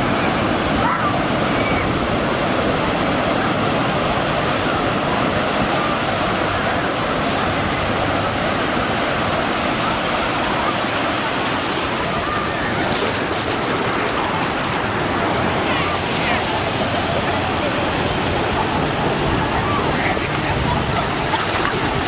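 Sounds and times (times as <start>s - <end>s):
churning water and breaking waves: 0.0s - 22.0s.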